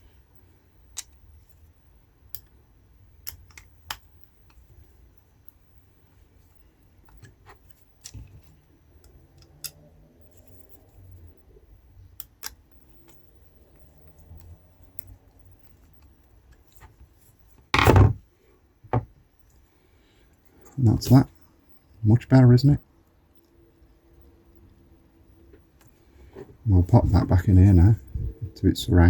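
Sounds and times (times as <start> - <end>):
small parts clicking on a bench: 0.9 - 1.2, 3.2 - 4.6
loud short knock: 17.8 - 18.2.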